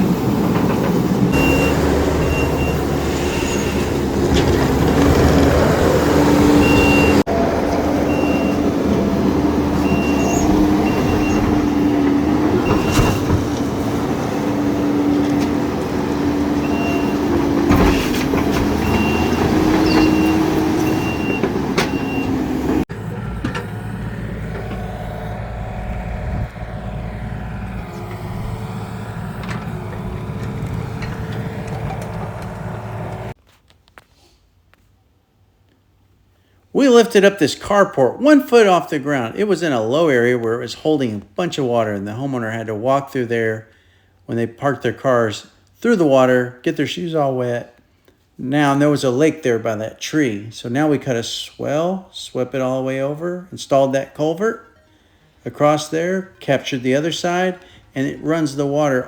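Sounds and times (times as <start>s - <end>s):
diesel engine running: 0.0s - 33.4s
backup alarm beeping: 1.3s - 4.1s, 6.5s - 14.0s, 16.5s - 18.0s, 18.7s - 33.3s.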